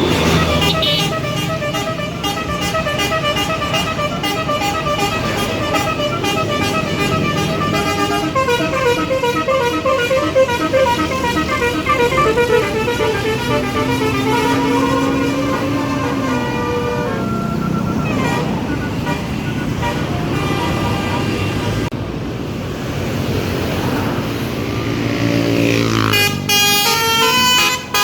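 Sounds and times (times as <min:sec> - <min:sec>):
bus melody horn: 0:00.0 - 0:21.9, 0:25.8 - 0:28.0
steady low horn tone: 0:00.0 - 0:21.9.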